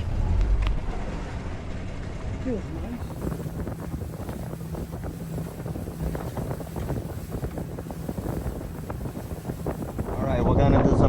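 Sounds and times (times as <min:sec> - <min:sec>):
motorboat engine humming: 0:02.5 - 0:10.6
wind buffeting microphone: 0:02.6 - 0:11.0.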